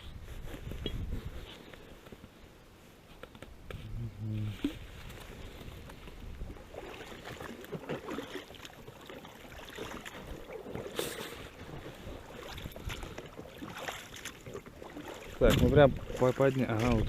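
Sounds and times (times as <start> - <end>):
water splashing and sloshing: 4.4 - 17.0
fishing net knocks and ticks: 12.8 - 17.0.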